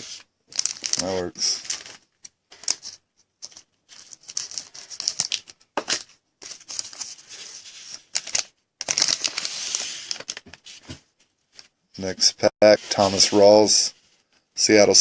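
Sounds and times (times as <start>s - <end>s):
wrapper crinkling and tearing: 0.5s - 2.0s, 2.6s - 7.2s, 7.9s - 10.5s.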